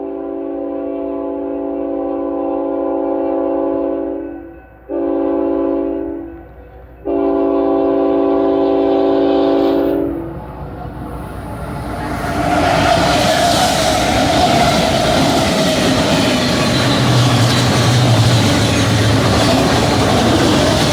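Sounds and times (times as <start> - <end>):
locomotive air horn blasts: 0.0 - 10.3.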